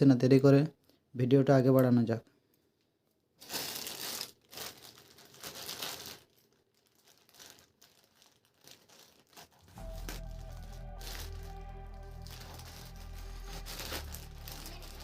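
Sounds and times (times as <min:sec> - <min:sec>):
plastic packaging crinkling: 0:03.4 - 0:15.0.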